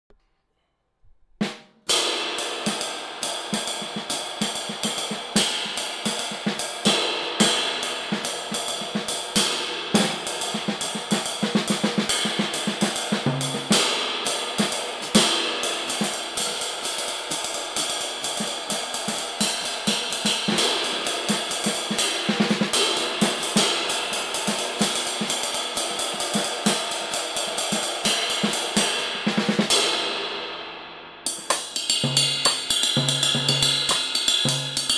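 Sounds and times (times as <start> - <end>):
cymbal played with sticks: 1.9 - 34.9.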